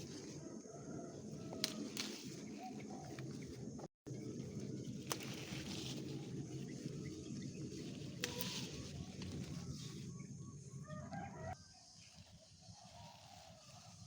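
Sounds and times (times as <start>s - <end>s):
rooster crowing: 0.2s - 1.9s, 10.6s - 11.9s
rough rustling noise: 1.1s - 10.1s.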